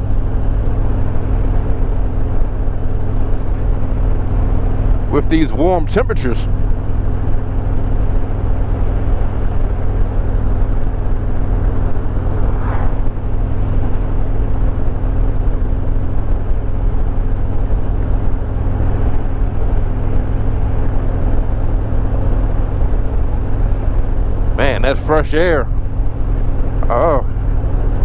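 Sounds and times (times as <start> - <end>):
motorcycle engine running: 0.0 - 28.0
wind and road noise: 0.0 - 28.0.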